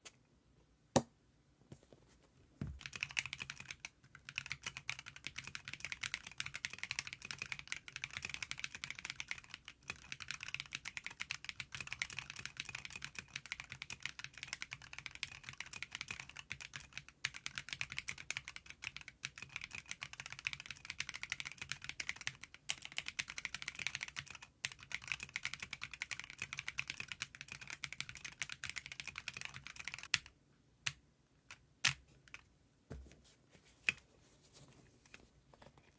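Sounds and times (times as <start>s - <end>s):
typing on mechanical keyboard: 2.8s - 30.3s.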